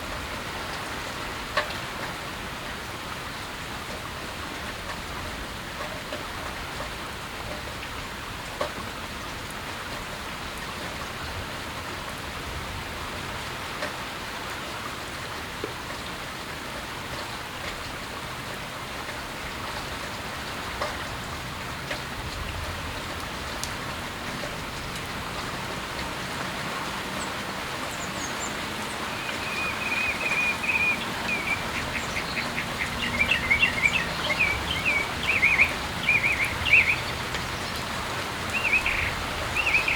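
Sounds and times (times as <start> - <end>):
steady rain falling: 0.0 - 39.9
bird calling high notes: 29.0 - 37.2.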